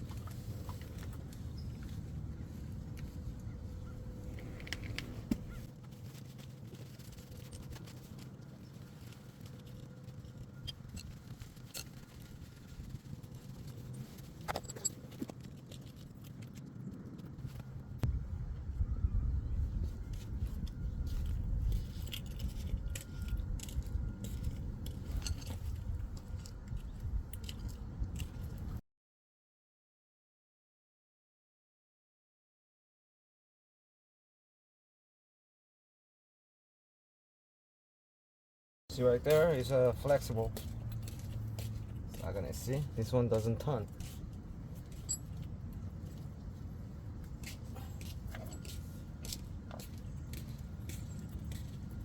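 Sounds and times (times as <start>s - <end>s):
low steady rumble: 0.0s - 28.8s
low rumble: 17.7s - 26.4s.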